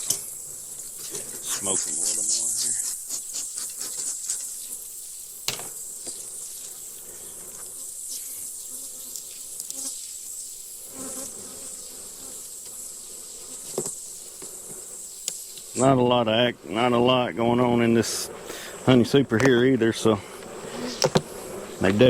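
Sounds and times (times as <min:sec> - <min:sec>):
honeybees buzzing: 0:00.0 - 0:22.0
hive tool knocks: 0:20.9 - 0:21.3.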